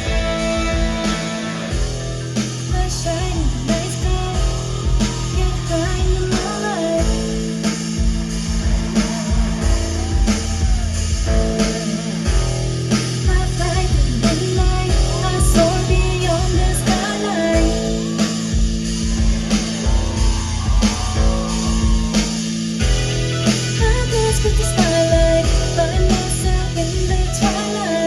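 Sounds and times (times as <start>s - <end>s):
rock music with singing: 0.0s - 28.0s.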